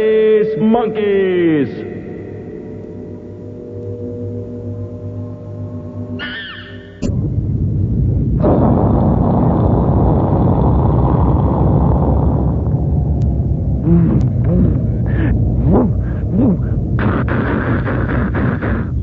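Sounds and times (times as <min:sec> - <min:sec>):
loud low rumble: 0:00.0 - 0:19.0
wide hissing roar: 0:08.4 - 0:19.0.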